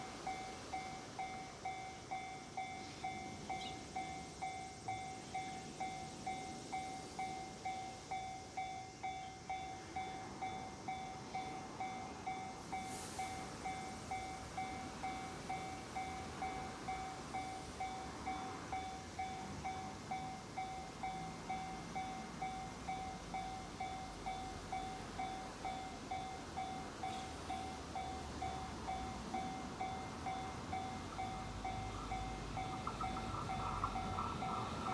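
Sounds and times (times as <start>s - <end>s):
approaching train rumble: 0.0s - 34.9s
level crossing warning bell: 0.0s - 34.9s.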